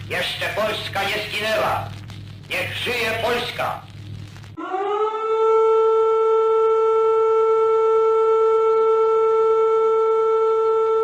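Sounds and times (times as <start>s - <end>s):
air-raid siren steady tone: 4.6s - 11.0s.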